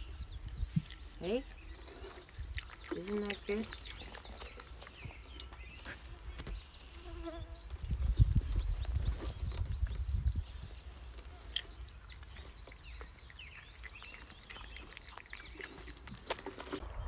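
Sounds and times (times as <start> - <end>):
wind buffeting microphone: 0.0 - 2.8, 7.4 - 11.1.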